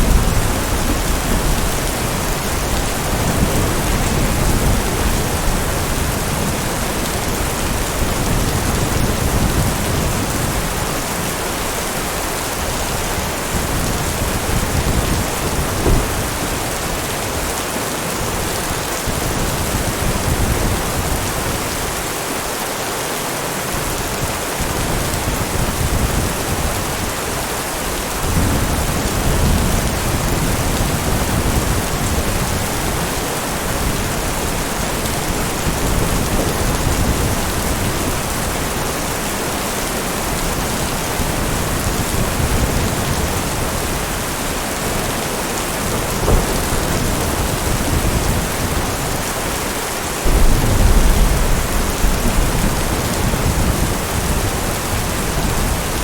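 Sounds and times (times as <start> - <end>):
thunder rolling: 0.0 - 10.8, 12.9 - 16.9, 45.8 - 49.2, 50.2 - 55.7
heavy rain: 0.0 - 56.0.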